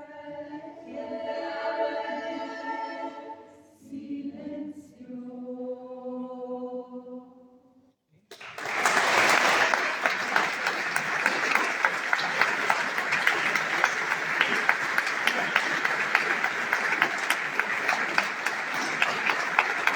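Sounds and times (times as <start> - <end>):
audience applauding: 8.3 - 19.9.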